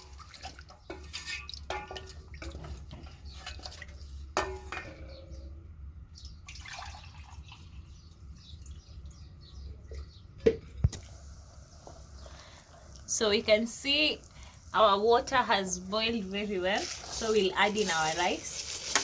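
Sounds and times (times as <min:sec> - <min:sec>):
liquid pouring into pot: 0:06.3 - 0:07.9.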